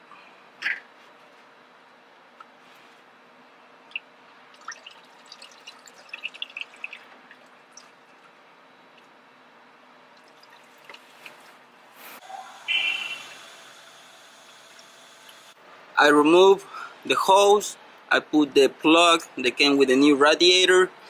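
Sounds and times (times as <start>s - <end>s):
fluid dripping: 3.9s - 9.2s, 10.1s - 11.5s.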